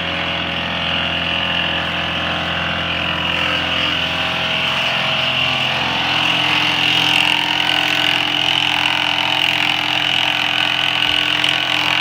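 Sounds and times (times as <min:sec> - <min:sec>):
engine running steadily: 0:00.0 - 0:12.0.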